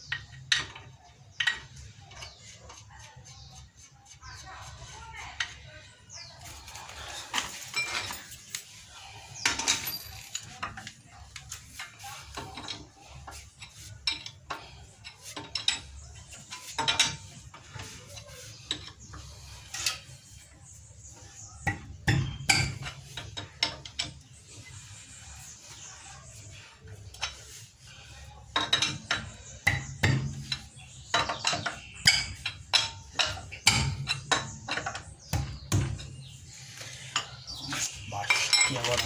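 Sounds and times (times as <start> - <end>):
metal tools clinking and knocking: 6.4 - 20.5, 21.6 - 25.8, 27.0 - 39.0.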